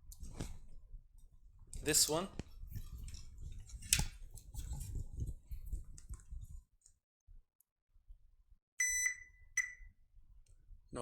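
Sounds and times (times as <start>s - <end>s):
short high electronic beep: 8.8s - 9.9s.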